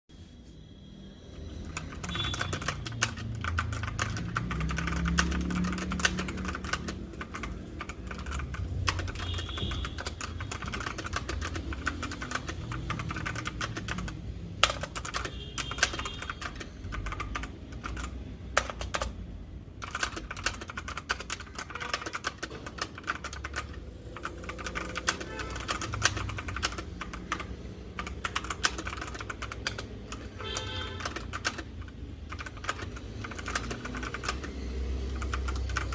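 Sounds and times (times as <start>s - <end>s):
fast typing on mechanical keyboard: 1.3s - 35.9s.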